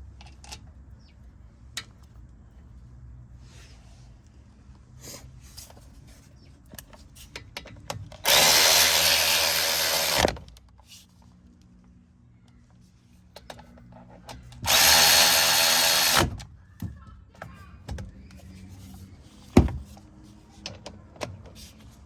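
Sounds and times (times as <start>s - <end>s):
power tool running at speed: 8.2s - 10.4s, 14.6s - 16.3s.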